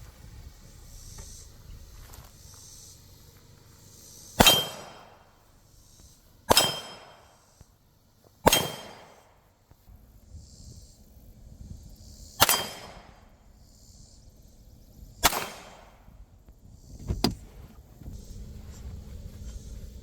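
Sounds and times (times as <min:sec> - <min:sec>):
pistol shots: 0:04.4 - 0:05.2, 0:06.5 - 0:07.3, 0:08.4 - 0:09.2, 0:12.4 - 0:13.1, 0:15.2 - 0:16.0.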